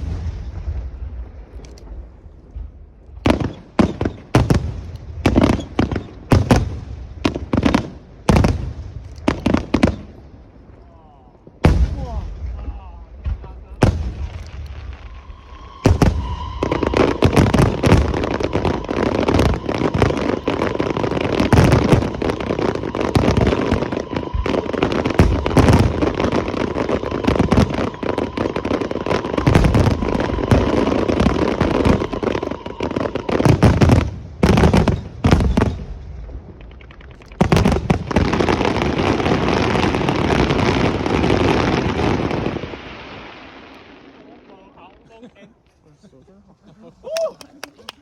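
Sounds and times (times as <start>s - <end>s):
firework shells bursting: 13.8s - 35.9s.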